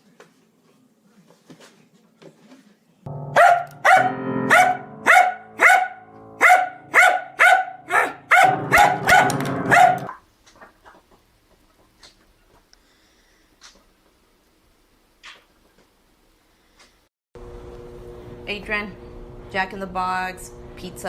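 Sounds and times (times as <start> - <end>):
dog barking: 3.4 - 10.2
steady low hum: 17.4 - 21.0.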